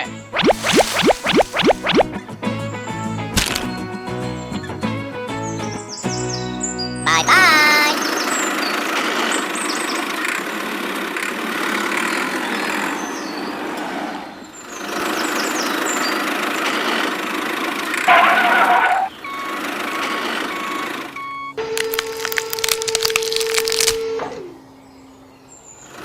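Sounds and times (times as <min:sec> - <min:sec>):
short beeps: 0:00.4 - 0:02.1.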